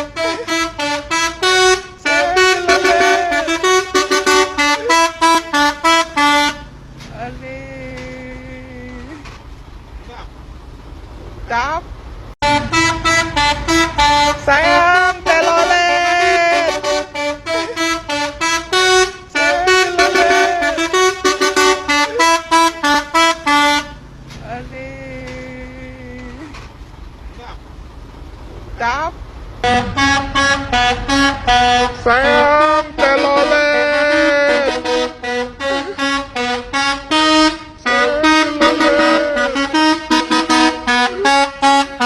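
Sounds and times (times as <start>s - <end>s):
musical air horn melody: 0.0s - 6.8s, 12.4s - 24.1s, 29.6s - 42.0s.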